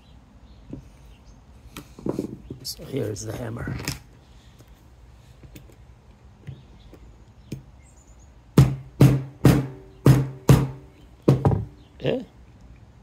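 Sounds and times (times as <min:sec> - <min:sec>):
hammer blows on copper pipe: 0:08.6 - 0:11.7.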